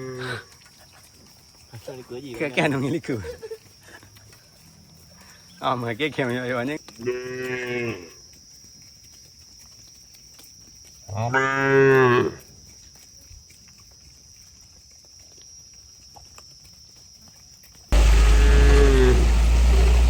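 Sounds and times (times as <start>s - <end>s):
cow mooing: 18.0s - 19.6s.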